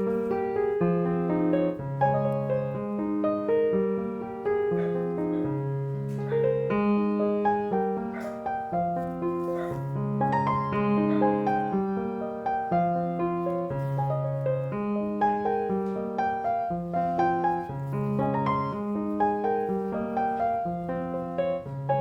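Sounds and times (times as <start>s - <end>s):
gentle piano music: 0.0s - 22.0s.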